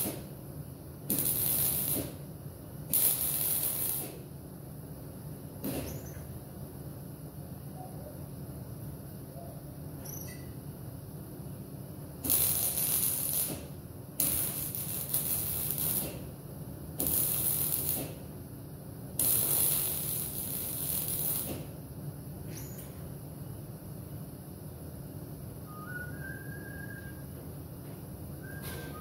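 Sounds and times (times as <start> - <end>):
welding bursts: 0.0 - 0.4, 1.0 - 4.3, 12.2 - 18.3, 19.1 - 21.8
steady low hum: 0.0 - 29.0.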